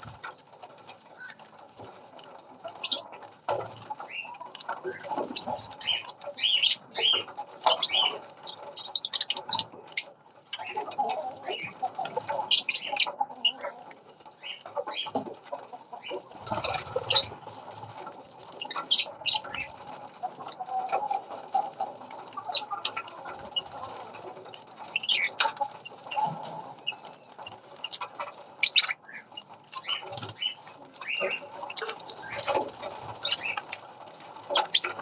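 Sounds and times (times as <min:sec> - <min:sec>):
small birds chirping: 0:01.0 - 0:01.6, 0:02.5 - 0:03.3, 0:03.9 - 0:15.2, 0:15.8 - 0:17.4, 0:18.5 - 0:35.0.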